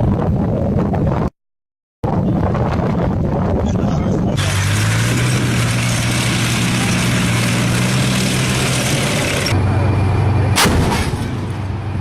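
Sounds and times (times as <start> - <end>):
heavy engine idling: 4.4 - 12.0.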